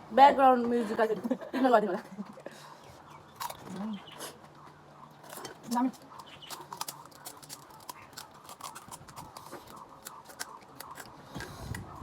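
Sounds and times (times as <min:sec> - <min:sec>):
crisp shells crunching while chewed: 0:03.2 - 0:04.5, 0:05.1 - 0:12.0.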